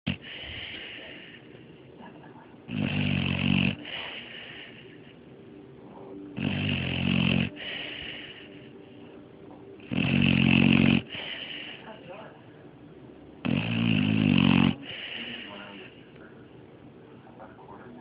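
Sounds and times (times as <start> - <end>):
puppy snoring: 0.1 - 1.6, 2.6 - 5.2, 5.8 - 9.0, 9.7 - 12.3, 13.4 - 16.1
puppy breathing softly: 0.1 - 2.0, 3.7 - 6.6, 7.4 - 9.9, 10.9 - 12.7, 14.6 - 16.6.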